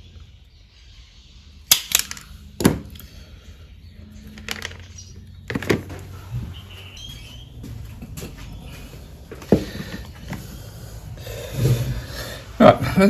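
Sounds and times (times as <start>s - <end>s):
small objects clicking on workbench: 1.7s - 3.1s, 4.3s - 6.0s.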